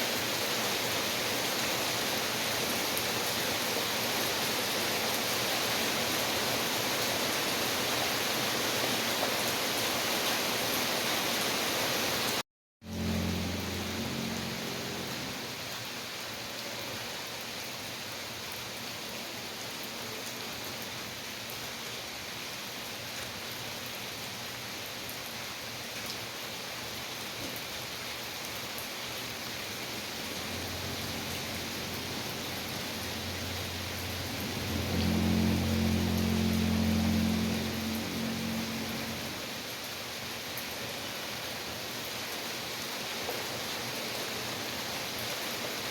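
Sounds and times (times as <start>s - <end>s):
steady rain: 0.0s - 45.9s
low hum: 12.8s - 15.5s, 30.1s - 39.5s
low steady rumble: 12.9s - 15.5s, 29.9s - 39.5s.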